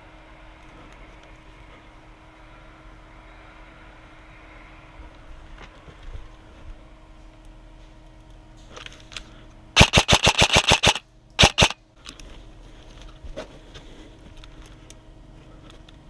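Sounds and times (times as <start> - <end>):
airsoft gun automatic bursts: 9.8 - 11.8.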